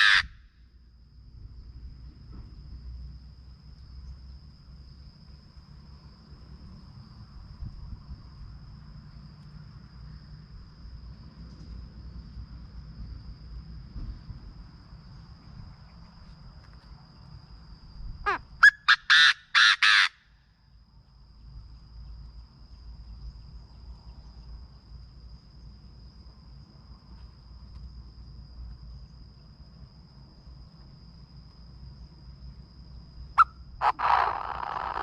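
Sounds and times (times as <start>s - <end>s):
bird calling harsh notes: 0.0s - 0.3s, 18.3s - 20.2s, 33.4s - 35.0s.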